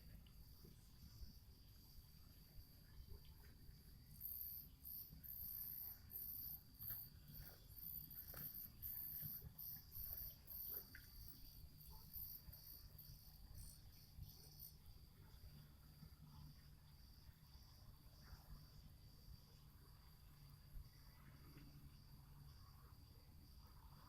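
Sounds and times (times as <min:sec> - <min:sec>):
faint ticks: 0:00.0 - 0:01.4, 0:04.2 - 0:14.8, 0:21.4 - 0:21.8
night insects chirping: 0:00.0 - 0:24.0.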